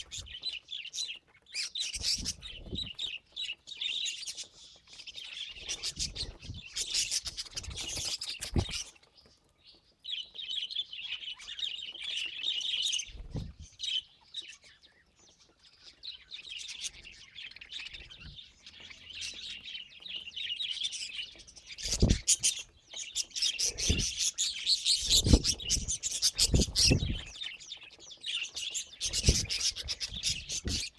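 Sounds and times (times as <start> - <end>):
budgerigars chirping: 0.0 - 9.0, 15.4 - 30.9.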